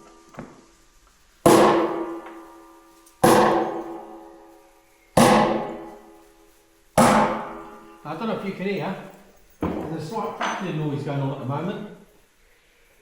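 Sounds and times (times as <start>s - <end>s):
hammer striking metal hoop: 1.5s - 2.6s, 3.2s - 4.4s, 5.2s - 6.2s, 7.0s - 8.0s.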